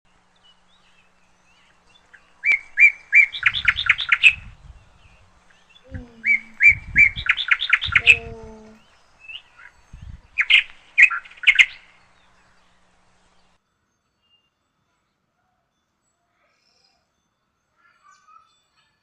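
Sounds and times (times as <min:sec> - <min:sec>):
sparrows chirping: 0:00.1 - 0:13.6.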